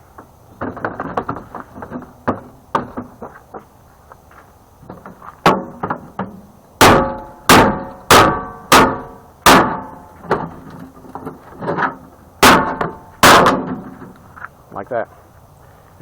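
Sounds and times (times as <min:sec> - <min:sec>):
hammer striking sheet metal: 0:06.8 - 0:10.1, 0:12.4 - 0:13.8.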